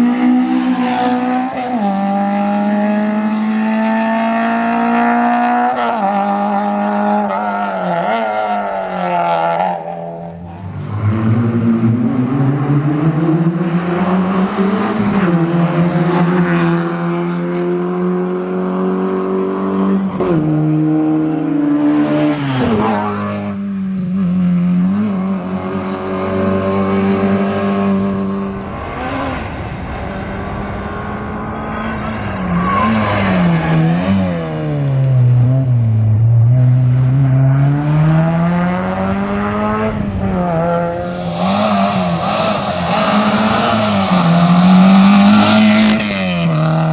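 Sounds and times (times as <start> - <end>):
rally car engine revving: 0.0 - 46.9.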